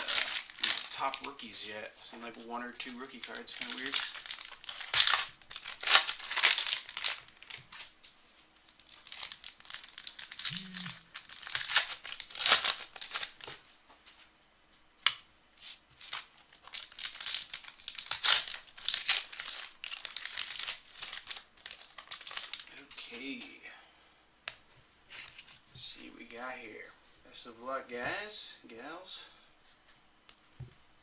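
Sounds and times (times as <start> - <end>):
card pack wrappers crinkling and tearing: 0.0 - 1.6, 2.8 - 7.9, 8.6 - 13.6, 15.6 - 23.4.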